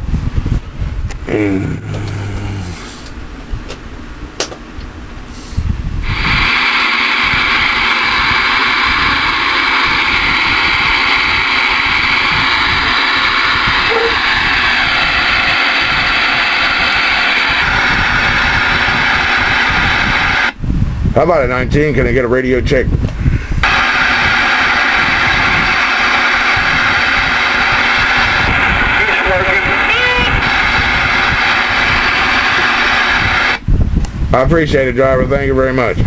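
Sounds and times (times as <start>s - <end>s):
radio static hiss: 5.4s - 20.6s, 23.6s - 33.6s.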